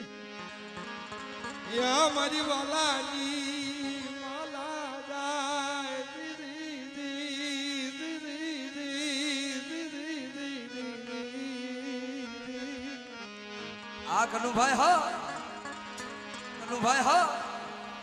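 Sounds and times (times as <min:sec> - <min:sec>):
wavering slow melody: 0:00.0 - 0:04.7, 0:11.3 - 0:18.0.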